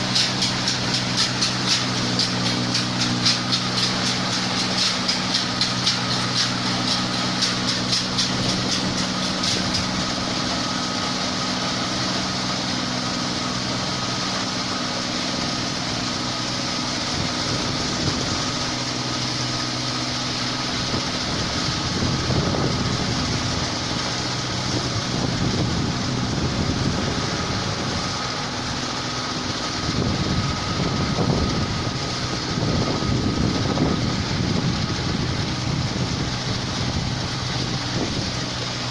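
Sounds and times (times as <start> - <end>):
fast regular clatter: 0.0 - 10.6
combine harvester running: 0.0 - 38.9.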